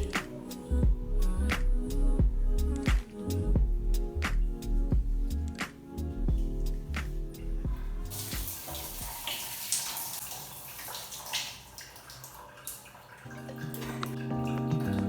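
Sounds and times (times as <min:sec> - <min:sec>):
shower water running: 0:06.4 - 0:15.0.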